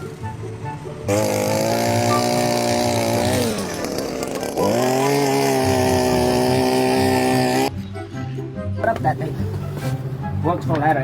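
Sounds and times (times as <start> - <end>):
small engine running at high speed: 1.0 - 7.7.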